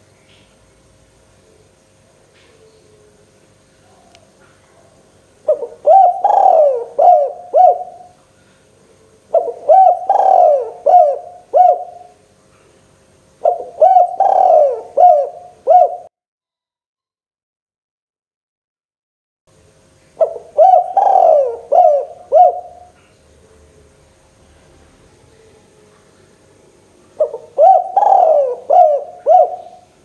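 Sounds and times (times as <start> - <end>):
dove cooing: 3.9 - 8.2, 8.9 - 12.2, 13.4 - 16.1, 20.2 - 23.9, 27.1 - 30.0.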